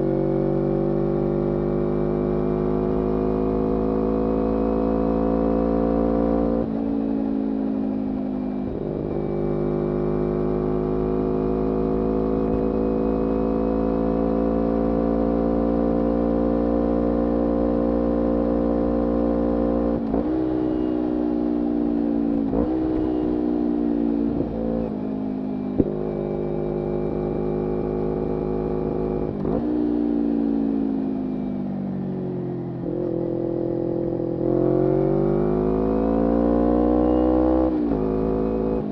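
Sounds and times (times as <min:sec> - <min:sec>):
motorcycle engine revving: 0:08.6 - 0:25.1, 0:32.7 - 0:38.9.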